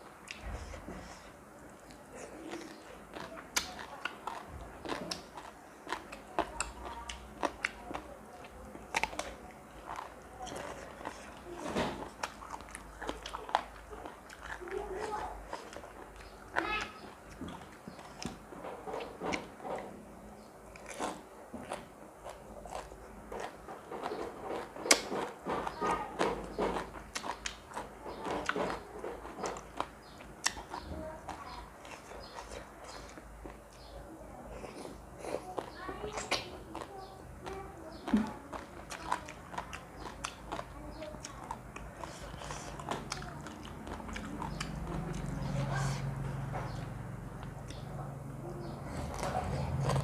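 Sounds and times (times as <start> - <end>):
person chewing and biting: 1.8 - 8.0, 8.9 - 11.4, 12.0 - 16.6, 20.7 - 25.8, 26.4 - 28.8, 38.0 - 46.2, 49.0 - 50.0
person crunching food: 20.7 - 25.3.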